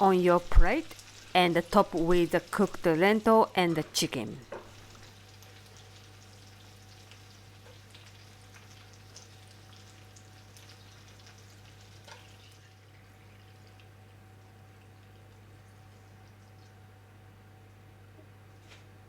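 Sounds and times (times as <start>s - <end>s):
faint crackling and ticks: 0.6s - 1.4s, 4.6s - 16.8s.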